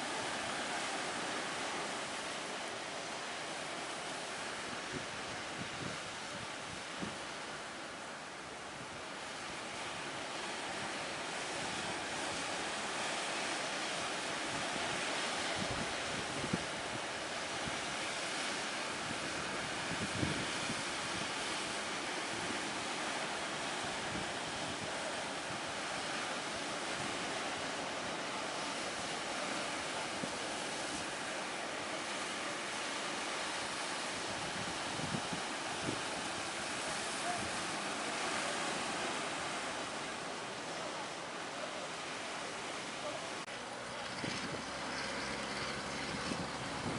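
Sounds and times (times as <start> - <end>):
waves rushing: 0.0 - 46.9
wind buffeting microphone: 34.3 - 36.3, 45.5 - 46.9.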